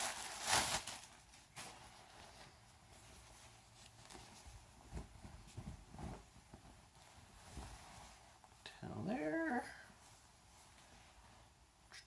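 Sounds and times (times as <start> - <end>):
packaging crinkling: 0.0 - 1.7.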